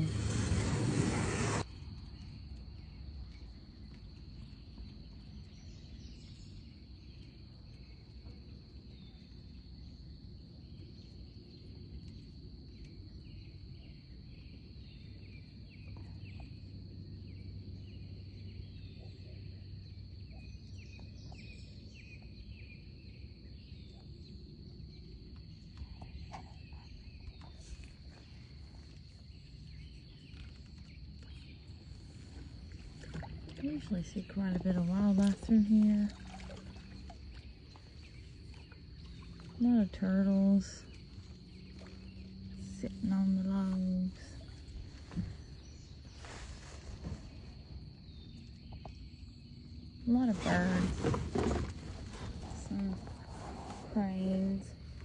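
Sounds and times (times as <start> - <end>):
insects droning: 0.0 - 55.0.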